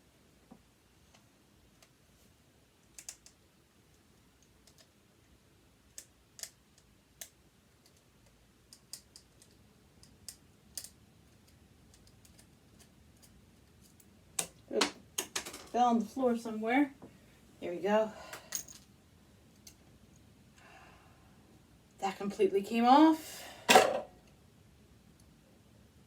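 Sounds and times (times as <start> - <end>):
small metallic clicks and taps: 2.8 - 4.9, 5.9 - 15.7.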